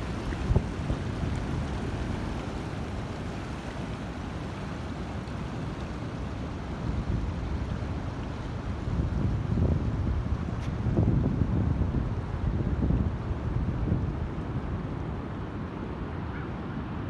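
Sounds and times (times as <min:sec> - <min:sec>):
wind buffeting microphone: 0:00.0 - 0:02.6, 0:06.8 - 0:15.5.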